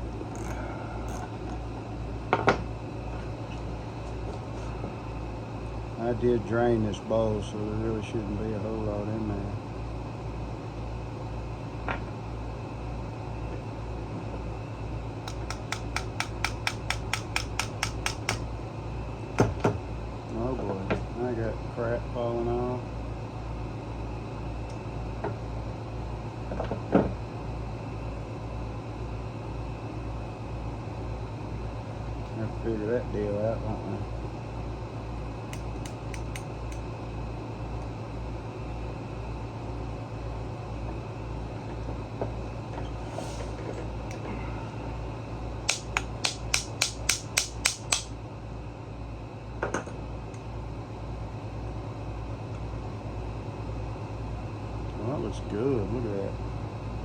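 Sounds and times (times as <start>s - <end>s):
steady low hum: 0.0s - 57.0s
tools clicking and knocking: 15.3s - 18.5s, 35.5s - 36.8s, 45.7s - 48.1s.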